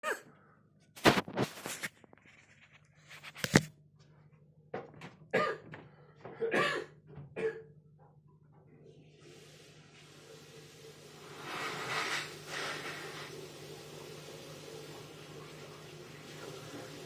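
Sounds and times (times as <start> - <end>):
person coughing: 5.3 - 7.8.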